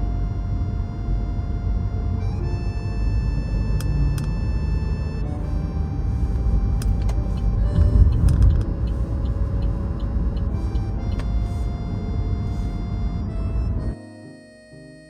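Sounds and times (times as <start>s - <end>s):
steady low rumble: 0.0s - 13.9s
soft background music: 0.0s - 15.0s.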